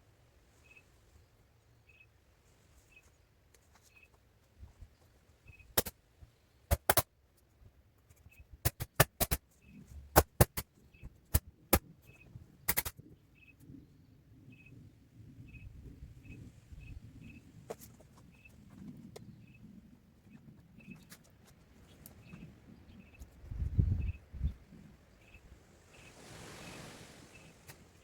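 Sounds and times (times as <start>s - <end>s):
faint high chirp: 0.6s - 1.0s, 1.8s - 2.2s, 3.8s - 4.2s, 5.4s - 5.8s, 12.0s - 12.4s, 14.5s - 14.8s, 15.4s - 17.5s, 21.9s - 28.0s.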